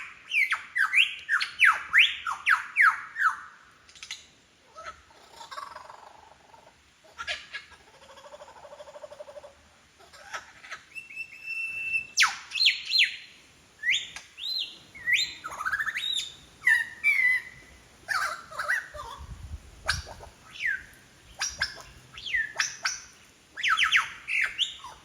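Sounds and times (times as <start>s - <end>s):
lyrebird mimicking bird calls: 13.9s - 25.0s.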